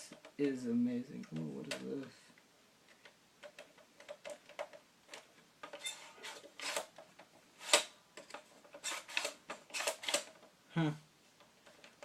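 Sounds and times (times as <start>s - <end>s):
rifle handling clicks and knocks: 2.9s - 10.5s.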